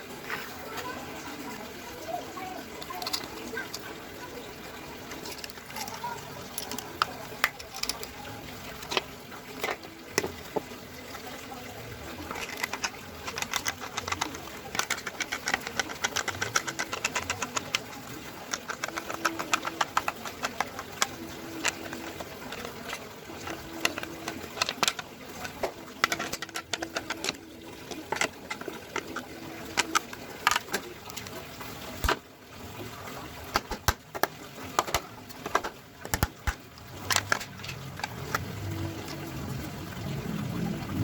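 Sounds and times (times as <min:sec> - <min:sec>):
dove cooing: 0:12.2 - 0:31.2.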